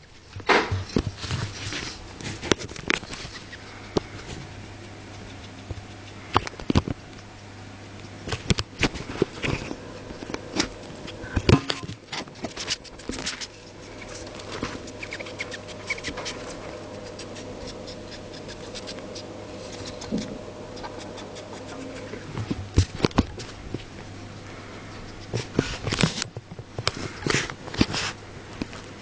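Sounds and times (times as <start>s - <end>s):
gerbil rustling: 0.0s - 29.0s
low steady hum: 0.0s - 29.0s
gerbil sniffling clicks: 2.9s - 7.4s, 14.9s - 22.3s.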